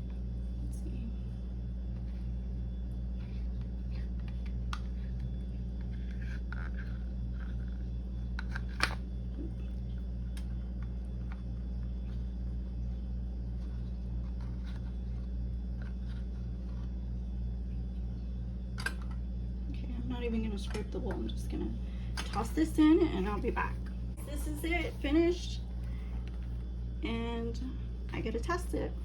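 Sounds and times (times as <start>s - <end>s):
low electrical hum: 0.0s - 29.0s.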